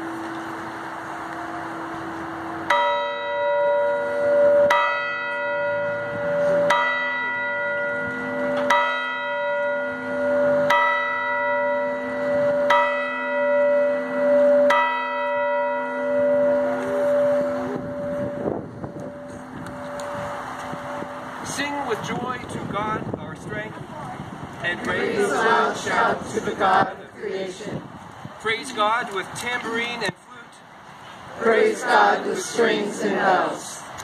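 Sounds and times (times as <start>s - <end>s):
church bell tolling: 0.0s - 21.9s.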